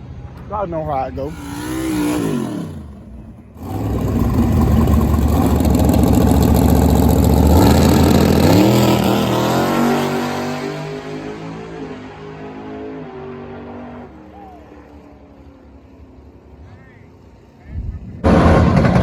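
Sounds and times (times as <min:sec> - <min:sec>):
racing car engine at high revs: 0:01.2 - 0:14.2.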